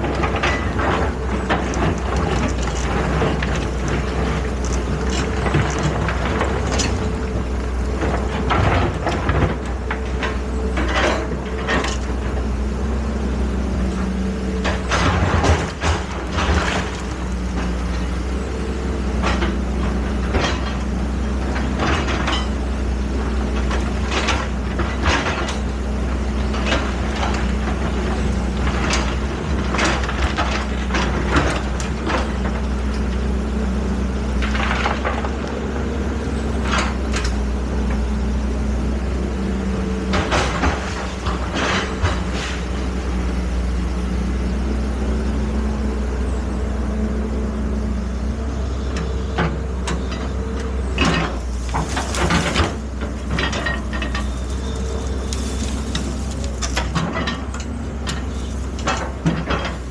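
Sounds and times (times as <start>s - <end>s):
diesel engine running: 0.0s - 59.9s
metallic clanks: 51.0s - 59.9s.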